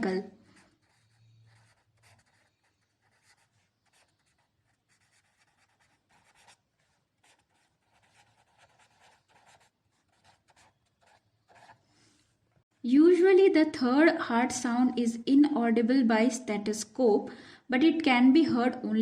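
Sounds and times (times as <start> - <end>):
pen scratching while writing: 0.0 - 11.8.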